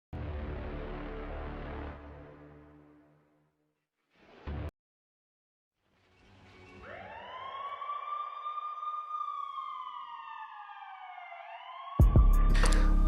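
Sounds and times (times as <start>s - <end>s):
warning siren winding up and down: 6.7s - 13.0s.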